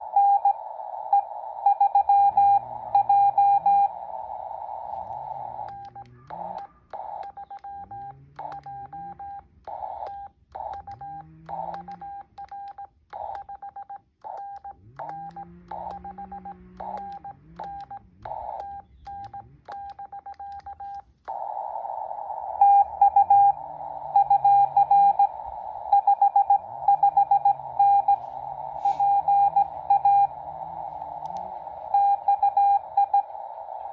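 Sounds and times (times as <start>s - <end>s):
morse code tone: 0.2s - 21.7s, 22.4s - 33.9s
radio band hiss: 2.3s - 12.0s, 20.7s - 33.9s.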